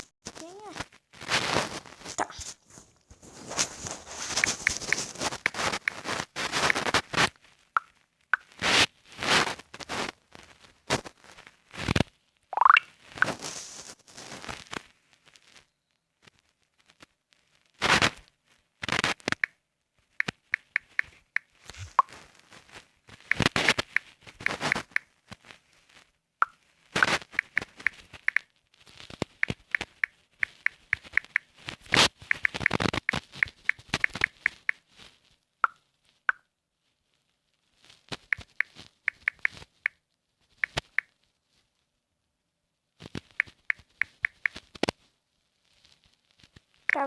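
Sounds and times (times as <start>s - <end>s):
phone keyboard clicks: 4.4s - 6.0s, 20.2s - 22.1s, 23.3s - 25.1s, 27.0s - 28.4s, 29.4s - 31.5s, 32.2s - 34.8s, 38.3s - 39.6s, 43.4s - 44.6s.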